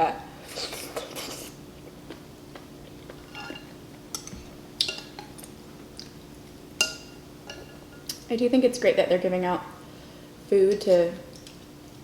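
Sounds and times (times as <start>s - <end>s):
faint steady hum: 0.0s - 12.0s
utensil clinking on soup bowl: 3.2s - 5.3s.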